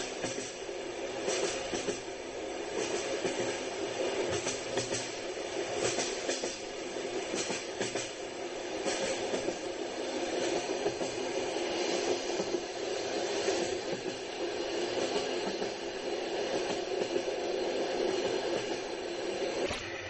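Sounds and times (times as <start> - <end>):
train rumbling on track: 0.0 - 20.0
wheels clicking over rail joints: 2.8 - 8.2.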